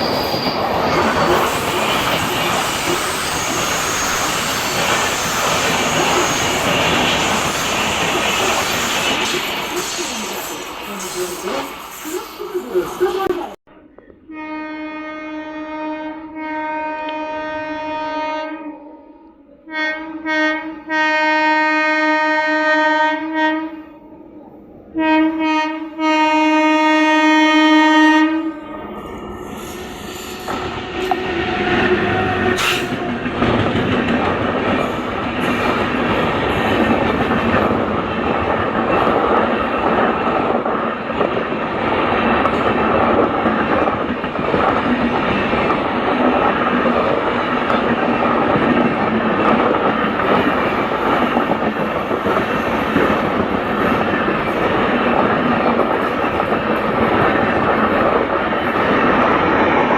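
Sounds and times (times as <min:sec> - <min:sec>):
train wheels on track: 0:00.0 - 0:14.1, 0:25.3 - 0:59.9
locomotive horn blasts: 0:14.3 - 0:18.8, 0:19.7 - 0:23.8, 0:25.0 - 0:29.0.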